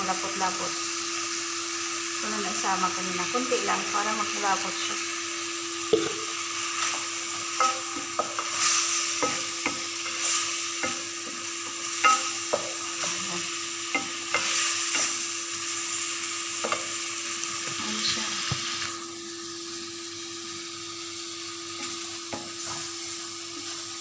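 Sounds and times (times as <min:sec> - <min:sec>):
chicken sizzling in sauce: 0:00.0 - 0:24.0
utensil scraping a pan: 0:06.7 - 0:15.3.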